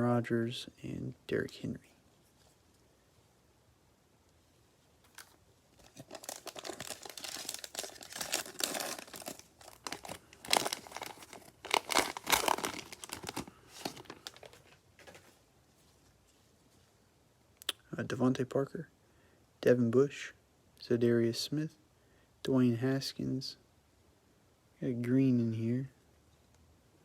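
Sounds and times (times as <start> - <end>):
cellophane crinkling and tearing: 5.0 - 15.4.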